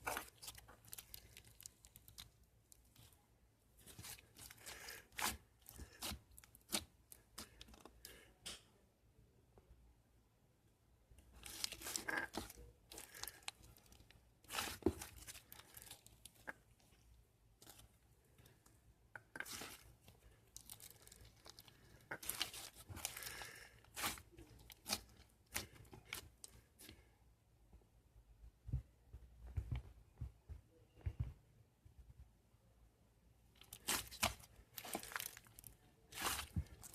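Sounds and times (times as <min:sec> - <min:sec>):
tearing and crinkling: 0:00.0 - 0:03.1, 0:11.4 - 0:16.5, 0:19.4 - 0:26.6, 0:33.6 - 0:36.9.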